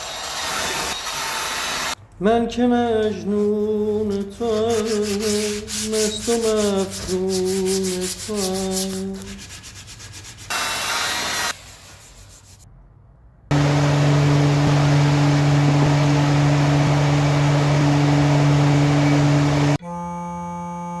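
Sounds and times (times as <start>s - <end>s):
hand sanding wood: 3.4s - 12.6s
power tool humming against wood: 13.5s - 21.0s.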